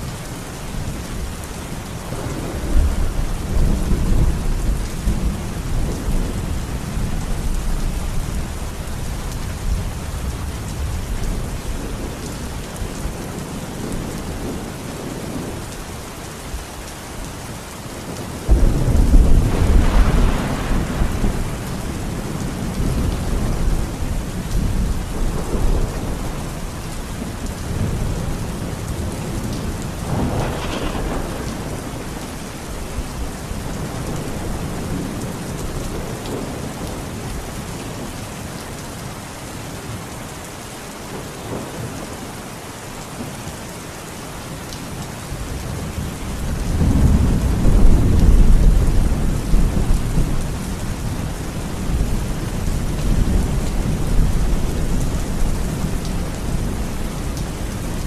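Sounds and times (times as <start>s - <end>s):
steady rain: 0.0s - 58.0s
thunder rumbling: 2.1s - 15.6s, 18.4s - 37.4s, 45.6s - 58.0s.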